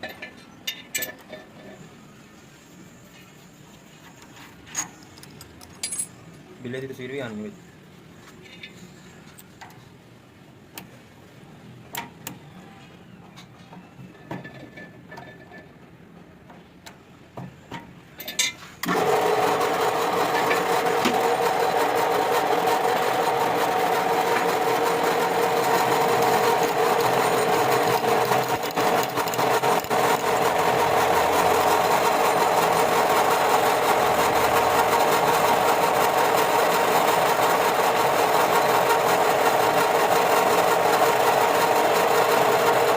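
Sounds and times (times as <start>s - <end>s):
machine humming and whirring: 18.8s - 42.9s.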